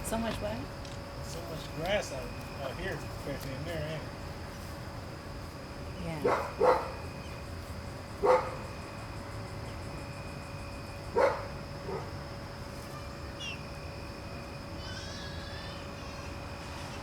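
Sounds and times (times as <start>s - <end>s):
dog barking: 6.2s - 7.0s, 8.2s - 8.6s, 11.1s - 12.2s
small bird chirping: 13.4s - 13.7s.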